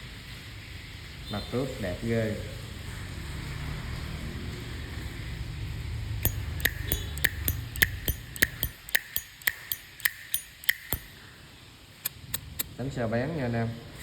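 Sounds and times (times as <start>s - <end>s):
lighter metallic clicks: 6.2s - 11.1s, 12.1s - 12.7s.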